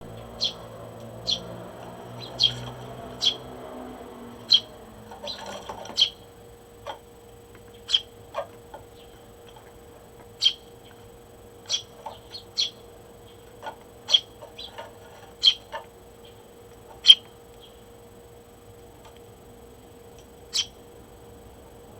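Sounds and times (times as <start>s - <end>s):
sparrow chirps: 0.0s - 7.0s, 7.7s - 9.6s, 10.2s - 11.0s, 11.6s - 17.8s, 20.4s - 20.8s.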